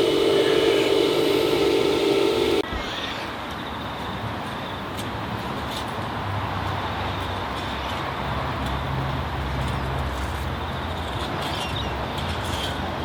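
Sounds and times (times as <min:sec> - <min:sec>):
low blower hum: 0:00.0 - 0:02.6
burner air and flame roar: 0:00.0 - 0:02.8.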